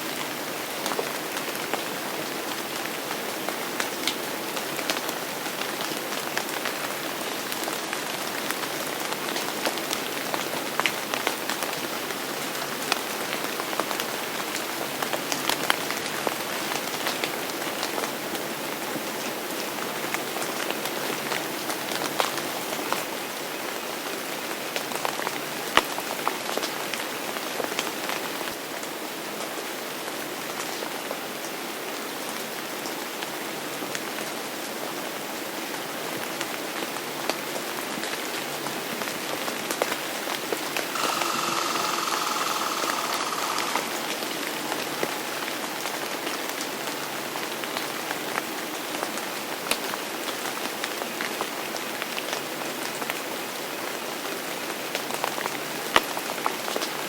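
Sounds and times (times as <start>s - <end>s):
rain falling: 0.0s - 18.8s
steady high tone: 40.9s - 44.2s.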